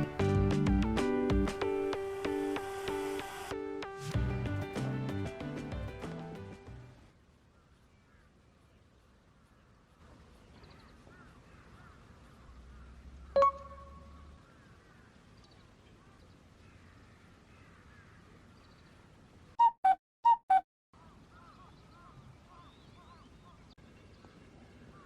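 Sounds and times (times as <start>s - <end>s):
faint background chirping: 7.4s - 19.3s
short loud honk-like tones: 19.6s - 20.6s.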